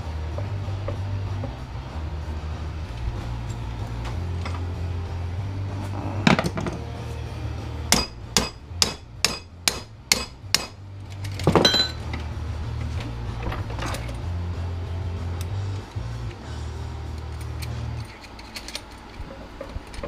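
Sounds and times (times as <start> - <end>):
hammer striking metal: 7.9 - 10.8, 11.6 - 12.0.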